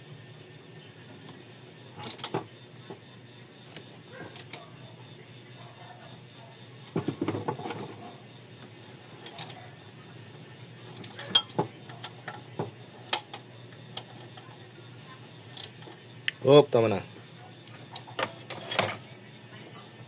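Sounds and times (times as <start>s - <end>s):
metal tools clinking on engine: 11.1s - 12.1s.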